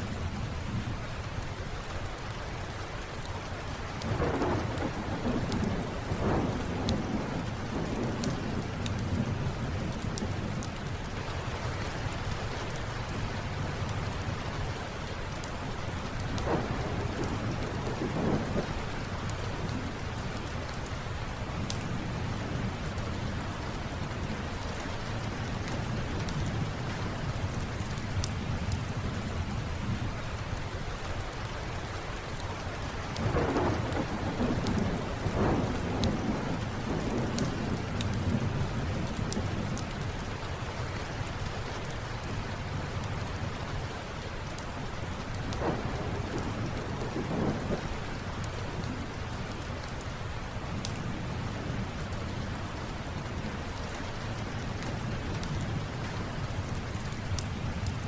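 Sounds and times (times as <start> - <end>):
steady rain: 0.0 - 58.0
sharp crackles and ticks: 3.0 - 9.2, 9.8 - 21.9, 22.8 - 29.1, 30.4 - 50.1, 50.7 - 51.1, 51.9 - 58.0
rolling thunder: 4.1 - 10.7, 16.1 - 19.8, 33.2 - 39.9, 45.5 - 49.0.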